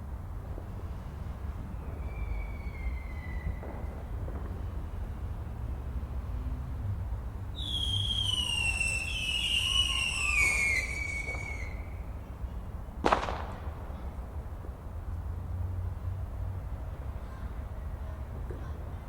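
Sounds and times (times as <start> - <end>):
whistling fireworks: 0.4 - 15.4
firework bang: 0.5 - 5.7, 7.6 - 12.0, 13.0 - 15.2.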